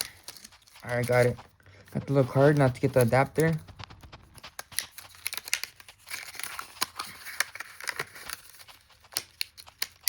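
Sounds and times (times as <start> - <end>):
plastic packaging crinkling: 0.0 - 10.0.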